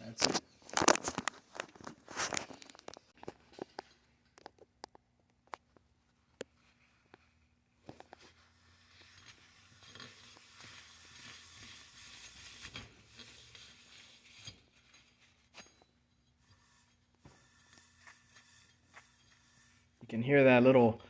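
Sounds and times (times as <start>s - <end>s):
wheel bearing rasping: 8.2s - 20.2s.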